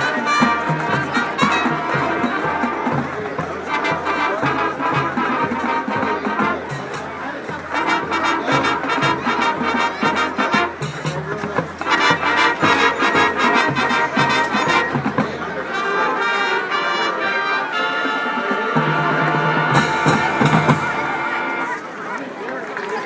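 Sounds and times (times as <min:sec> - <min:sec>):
marching band playing swing: 0:00.0 - 0:22.2
dense drumming: 0:18.8 - 0:21.4.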